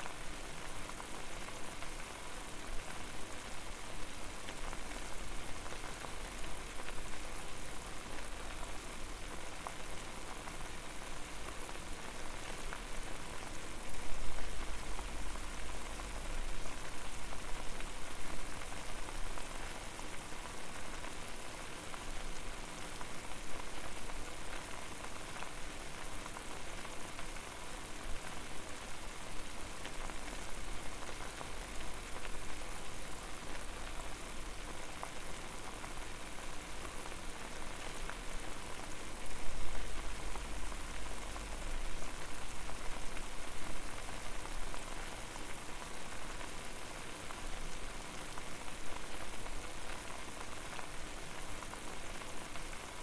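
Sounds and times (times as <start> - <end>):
water boiling and bubbling: 0.0 - 53.0.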